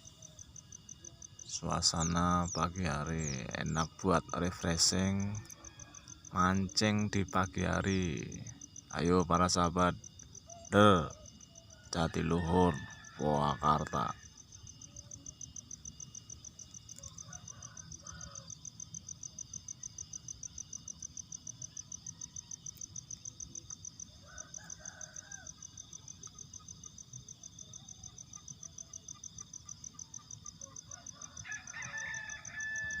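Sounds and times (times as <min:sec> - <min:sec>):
insect pulsing trill: 0:00.0 - 0:33.0
roosters crowing: 0:01.5 - 0:10.0, 0:10.7 - 0:15.3, 0:16.9 - 0:19.0, 0:24.0 - 0:26.3, 0:30.1 - 0:33.0.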